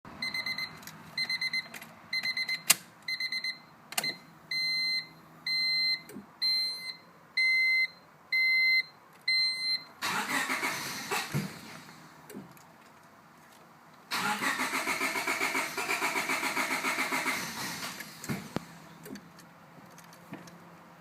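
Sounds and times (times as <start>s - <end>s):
car starter cranking engine: 10.0s - 12.5s, 14.1s - 19.3s.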